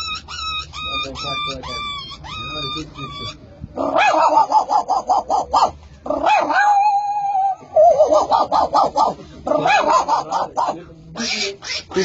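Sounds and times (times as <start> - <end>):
man imitating dog yips: 0.0 - 9.1.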